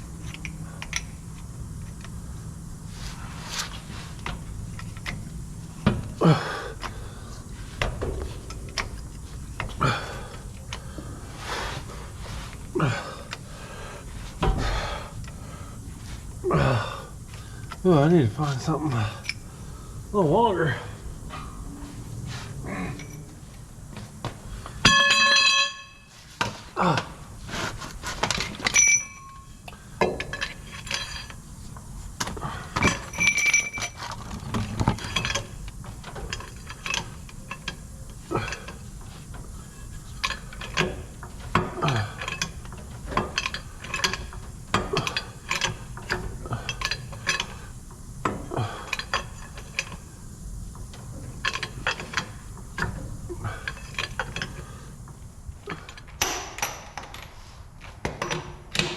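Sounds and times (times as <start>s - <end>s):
metal tools clanking: 22.6s - 23.5s, 24.8s - 27.1s, 28.0s - 31.4s, 32.2s - 50.1s, 50.9s - 54.9s.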